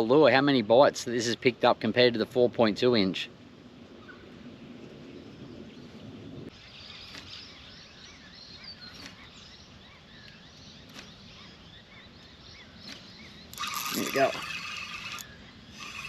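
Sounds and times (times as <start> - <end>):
birds chirping: 5.2 - 16.0.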